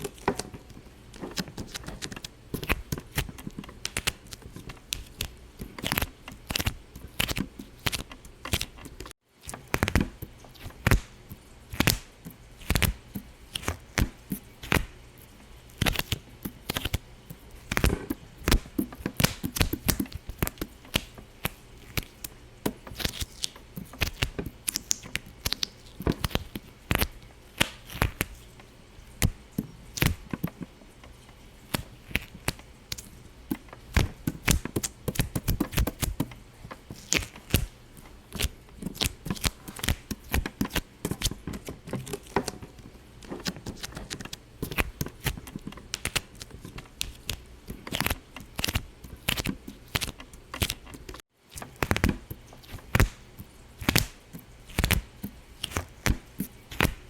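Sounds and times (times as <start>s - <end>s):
sharp pops and clicks: 15.8s - 28.4s, 29.2s - 57.0s.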